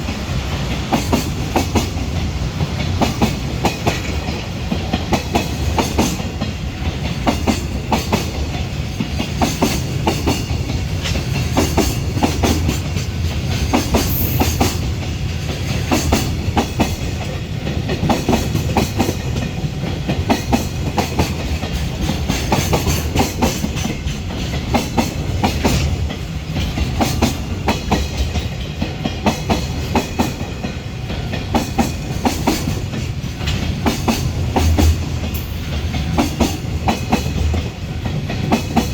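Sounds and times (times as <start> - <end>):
train rumble: 0.0 - 38.9
train wheels clattering on rails: 0.0 - 38.9.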